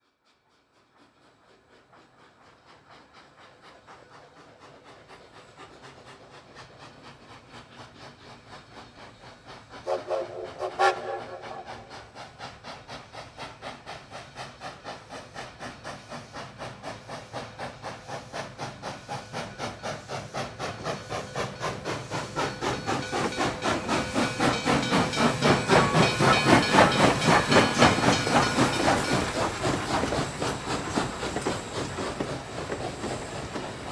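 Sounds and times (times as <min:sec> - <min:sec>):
steam locomotive chugging: 0:00.0 - 0:33.9
locomotive whistle blast: 0:09.9 - 0:11.7.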